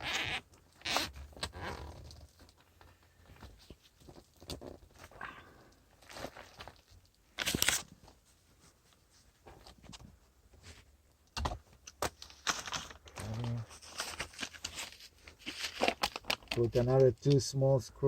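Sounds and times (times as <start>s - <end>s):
air duct crinkling and rustling: 0.3s - 10.9s, 11.8s - 17.6s
loud tearing: 12.4s - 16.6s.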